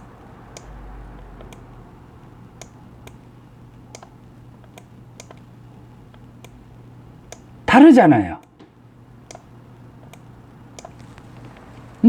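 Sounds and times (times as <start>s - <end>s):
steady low hum: 0.0s - 12.0s
light clicks: 3.9s - 5.5s, 8.4s - 12.0s.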